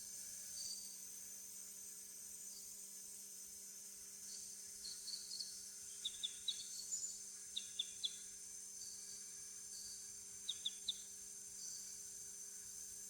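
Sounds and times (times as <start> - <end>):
insects droning: 1.6 - 13.0
bird chirps: 10.5 - 11.0.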